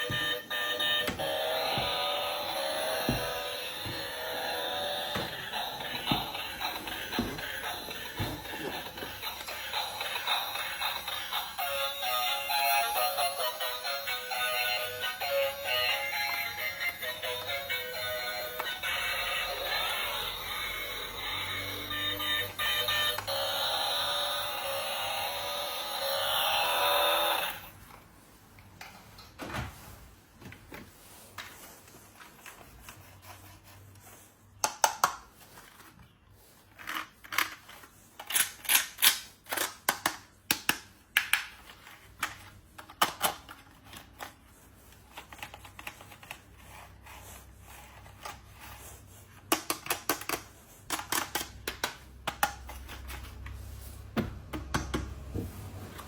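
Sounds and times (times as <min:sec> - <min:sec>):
music: 0:00.0 - 0:27.5.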